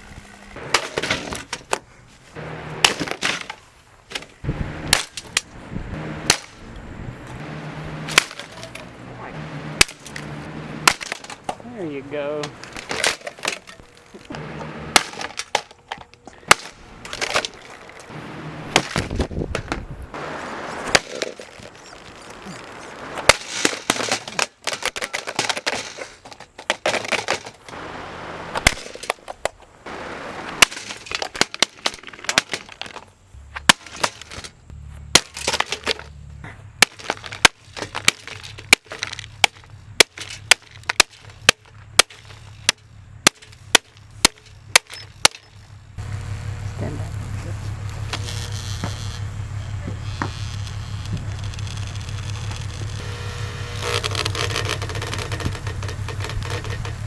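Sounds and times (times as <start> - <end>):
plastic cracking and breaking: 10.9 - 11.6, 15.0 - 18.1, 20.9 - 27.8, 36.8 - 45.8, 50.0 - 53.1, 53.7 - 57.0.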